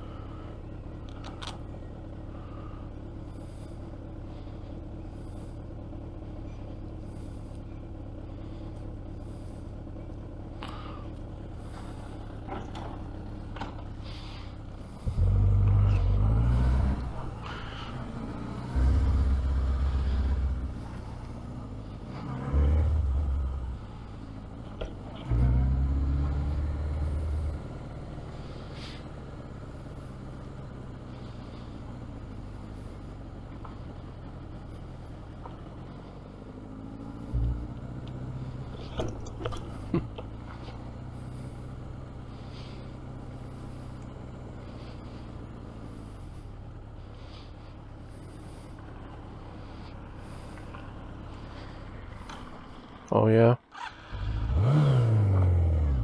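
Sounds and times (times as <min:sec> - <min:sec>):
steady low hum: 0:00.0 - 0:53.1
vehicle low rumbles: 0:00.0 - 0:56.0
sharp clicks: 0:01.0 - 0:01.6.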